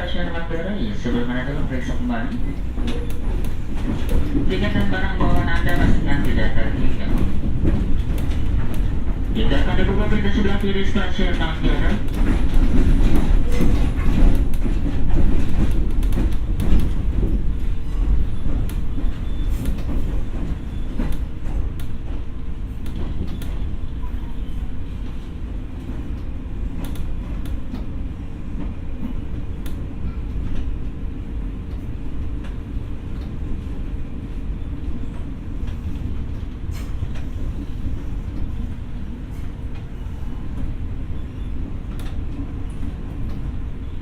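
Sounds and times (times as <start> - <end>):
train rumble: 0.0 - 44.0
train wheel clicks: 0.9 - 23.8, 25.8 - 28.0, 28.6 - 30.8, 41.9 - 43.5.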